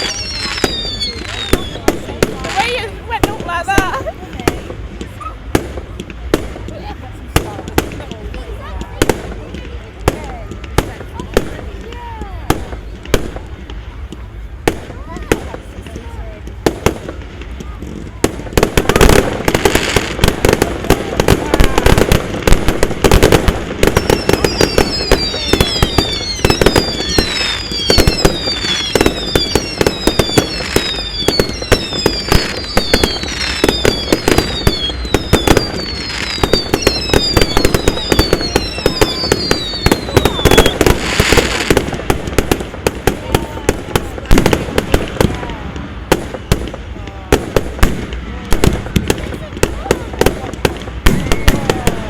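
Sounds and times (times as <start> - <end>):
falling firework whistles: 0.0 - 2.7, 18.2 - 41.8, 51.0 - 52.0
fireworks cracking and banging: 0.0 - 52.0.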